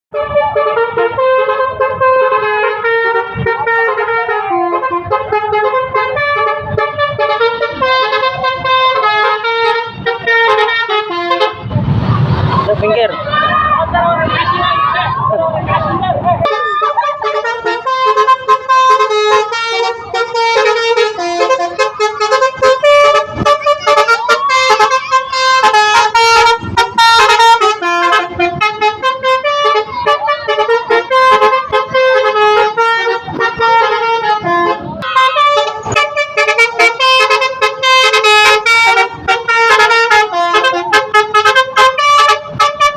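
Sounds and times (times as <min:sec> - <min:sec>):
multi-tone bus horn tune: 0:00.1 - 0:11.8, 0:16.4 - 0:42.9.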